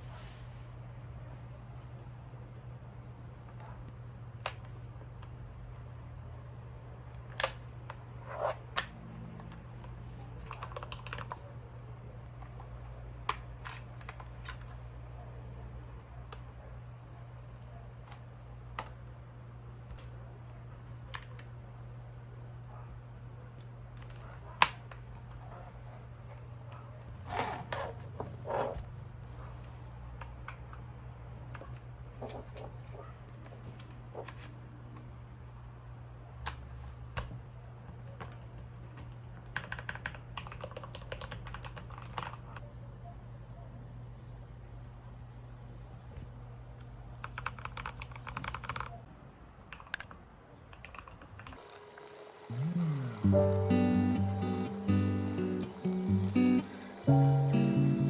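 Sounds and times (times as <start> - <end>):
mechanical keyboard keys clacking: 38.3 - 42.4, 50.8 - 58.0.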